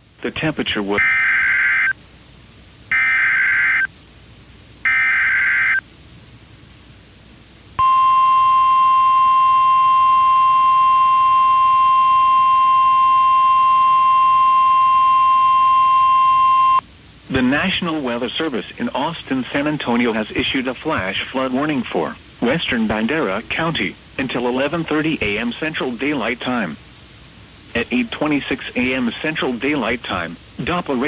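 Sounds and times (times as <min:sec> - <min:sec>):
digital data bursts: 0:00.9 - 0:02.0, 0:02.9 - 0:03.9, 0:04.8 - 0:05.8.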